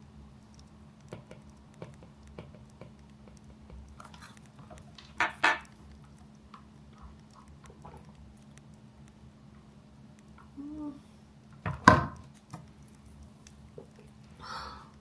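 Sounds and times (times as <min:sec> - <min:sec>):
faint steady hum: 0:00.0 - 0:15.0
campfire crackling: 0:00.3 - 0:10.6.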